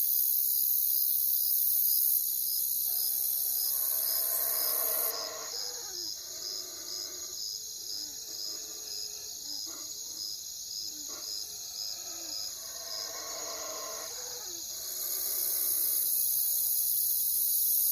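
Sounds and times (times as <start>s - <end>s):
crickets trilling: 0.0s - 17.9s.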